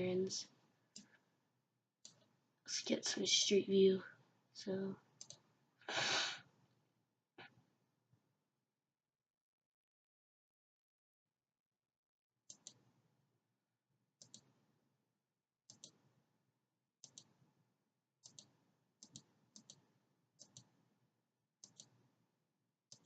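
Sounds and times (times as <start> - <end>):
computer mouse clicks: 2.0 - 2.3, 5.2 - 5.4, 12.5 - 12.8, 14.2 - 14.5, 15.7 - 16.1, 17.0 - 17.4, 18.2 - 20.8, 21.6 - 22.0.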